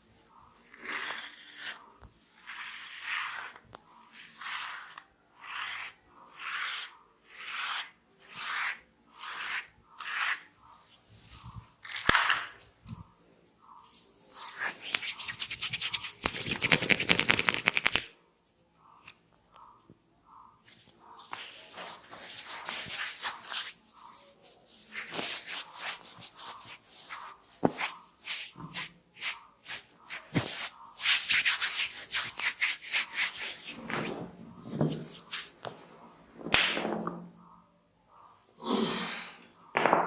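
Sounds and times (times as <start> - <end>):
hands rubbing hair and scalp: 13.8 - 18.0, 21.1 - 34.1, 34.9 - 35.8.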